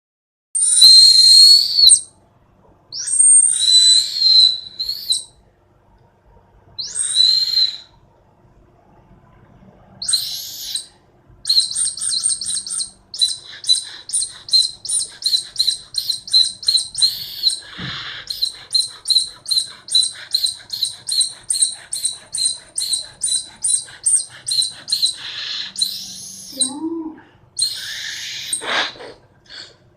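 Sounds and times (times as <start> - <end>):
person making high chirping squeaks: 0.6 - 2.0, 11.5 - 29.8.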